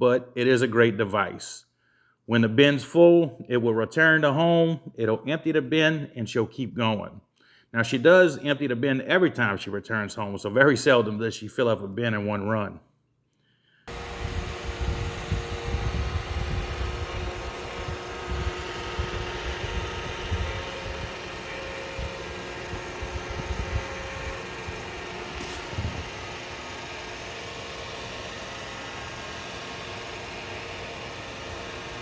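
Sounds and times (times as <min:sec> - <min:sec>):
robot vacuum motor whirring: 0:13.9 - 0:32.0.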